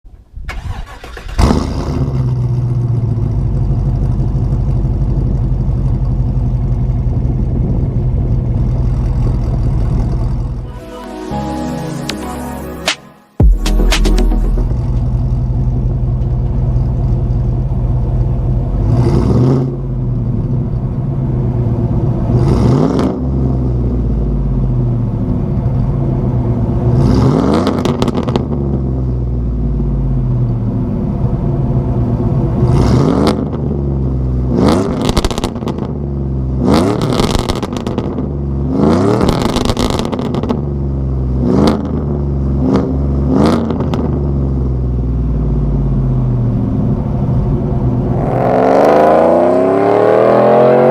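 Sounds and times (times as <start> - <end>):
exhaust crackles and pops: 34.8 - 36.0, 36.9 - 38.3, 39.2 - 40.6
pickup truck engine revving: 47.8 - 50.9.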